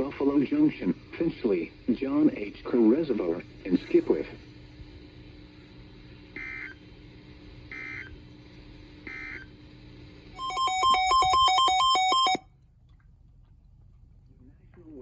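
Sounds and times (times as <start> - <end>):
buzzy digital data bursts: 6.4 - 6.8, 7.7 - 8.1
electronic warble of beeps: 10.4 - 12.4.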